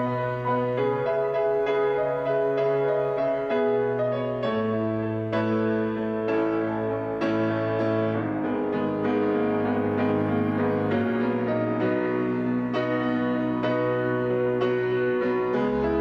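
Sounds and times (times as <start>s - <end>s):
gentle piano chords: 0.0s - 16.0s.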